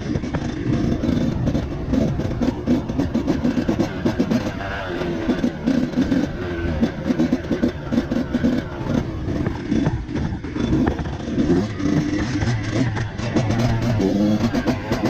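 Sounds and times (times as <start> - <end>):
dirt bike engine revving: 0.0 - 15.0.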